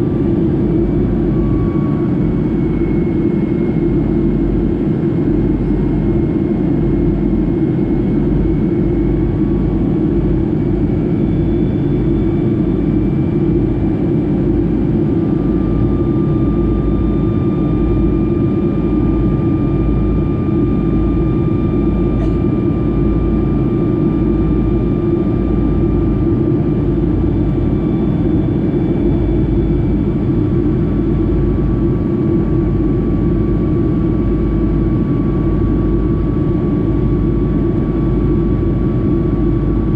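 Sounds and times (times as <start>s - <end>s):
jet engines droning: 0.0s - 39.9s.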